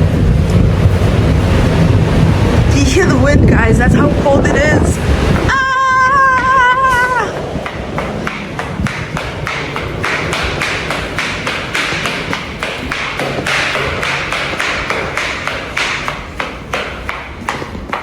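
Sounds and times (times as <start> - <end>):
wind buffeting microphone: 0.0 - 18.0
fast even tapping: 5.2 - 18.0.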